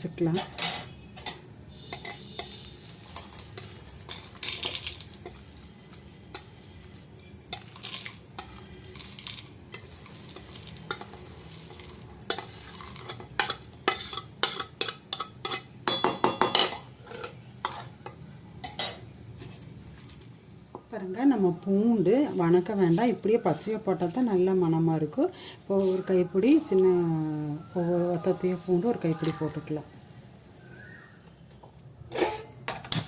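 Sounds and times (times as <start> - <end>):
crickets chirping: 0.0 - 33.0
spoon scraping and clinking in pan: 0.3 - 5.5, 7.5 - 19.0, 32.1 - 33.0.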